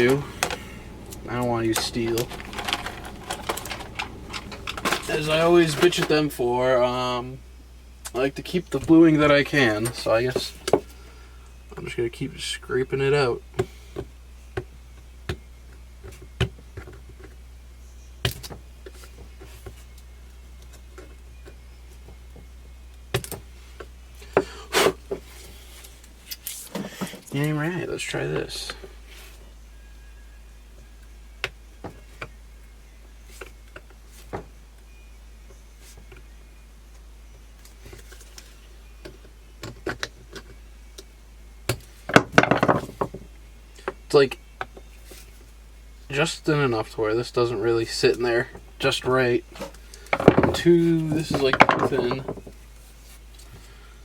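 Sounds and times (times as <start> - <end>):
rapid scraping and rattling: 0.0 - 6.2
steady low hum: 0.0 - 39.6.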